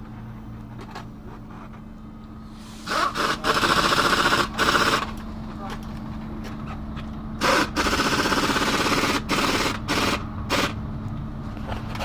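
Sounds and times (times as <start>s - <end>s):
compressed air blowgun hissing: 2.5s - 3.2s.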